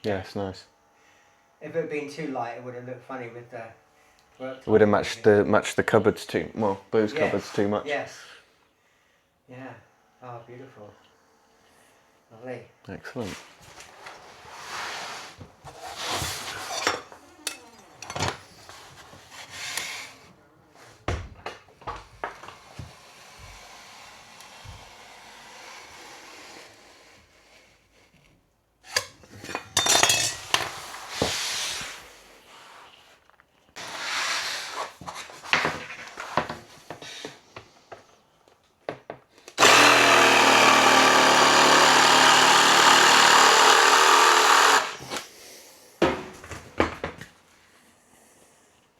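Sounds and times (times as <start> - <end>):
scraping and rubbing: 13.3 - 20.3
power tool motor running: 22.0 - 27.6, 39.5 - 45.3.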